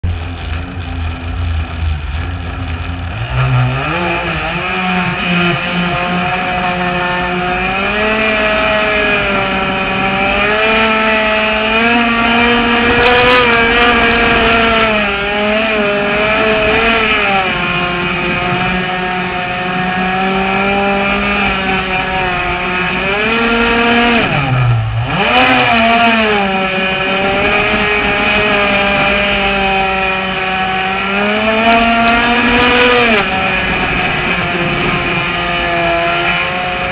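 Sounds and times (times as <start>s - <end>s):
two-stroke boat engine revving: 0.1s - 36.9s.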